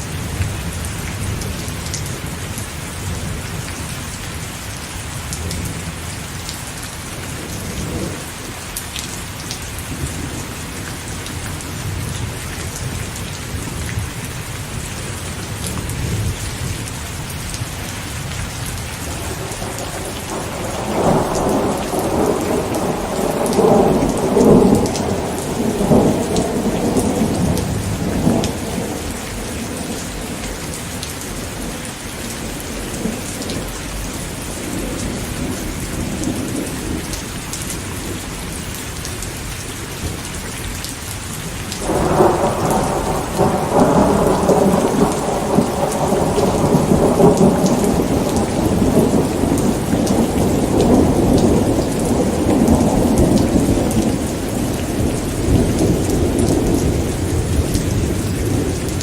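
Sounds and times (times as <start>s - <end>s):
steady rain: 0.0s - 59.0s
rolling thunder: 18.6s - 38.2s, 41.8s - 59.0s.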